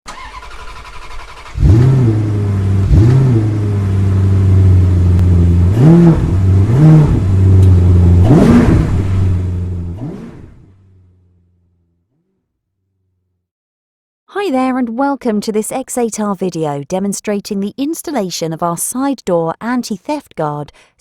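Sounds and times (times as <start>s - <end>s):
engine idling and revving: 0.1s - 12.2s.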